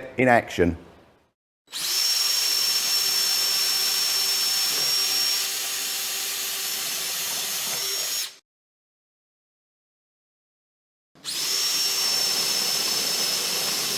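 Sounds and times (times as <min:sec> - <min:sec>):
power drill boring into wood: 0:01.7 - 0:08.4, 0:11.2 - 0:13.9.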